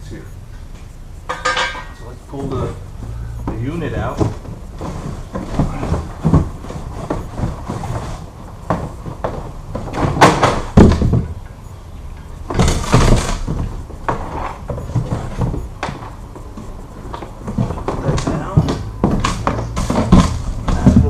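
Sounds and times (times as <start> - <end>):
cardboard and plastic scraping: 3.0 - 11.4, 12.5 - 21.0.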